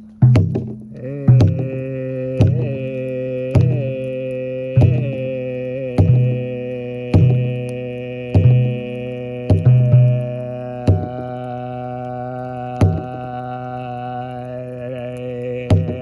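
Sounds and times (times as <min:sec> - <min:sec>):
slow drumbeat: 0:00.0 - 0:16.0.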